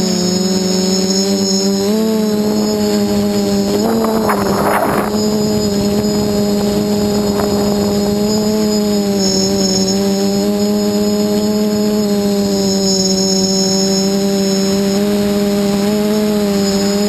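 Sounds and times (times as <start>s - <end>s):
drone motors buzzing: 0.0s - 17.0s
rush of wind noise: 2.1s - 17.0s.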